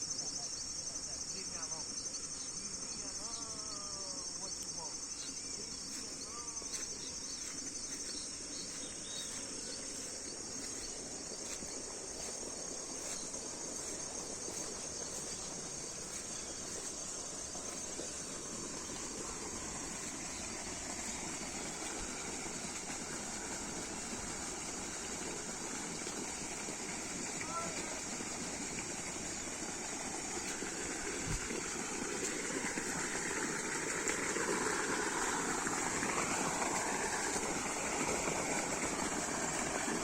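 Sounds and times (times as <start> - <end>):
faint bird chirps: 0.0 - 22.1
crickets trilling: 0.0 - 40.0.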